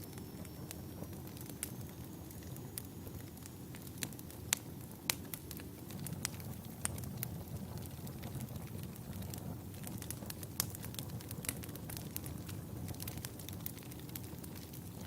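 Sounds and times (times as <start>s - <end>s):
fire crackles and pops: 0.0s - 15.0s
log fire rumbling: 0.0s - 15.0s.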